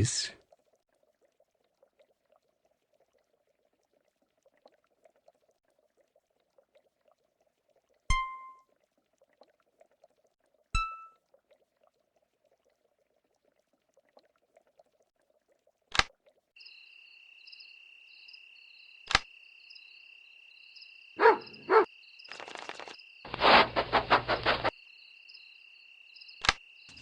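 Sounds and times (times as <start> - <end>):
crickets chirping: 16.6 - 27.0
sharp clicks: 19.1 - 19.3, 26.4 - 27.0.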